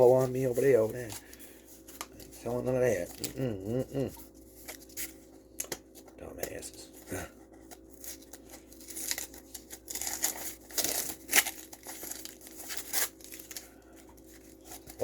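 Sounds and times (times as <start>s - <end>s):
packaging crinkling and tearing: 0.0s - 3.6s, 7.6s - 15.0s.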